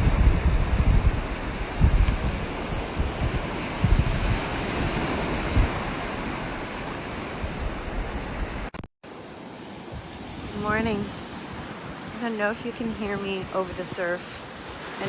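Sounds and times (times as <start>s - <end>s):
wind buffeting microphone: 0.0s - 8.8s, 9.7s - 15.0s
ocean surf breaking: 0.0s - 15.0s.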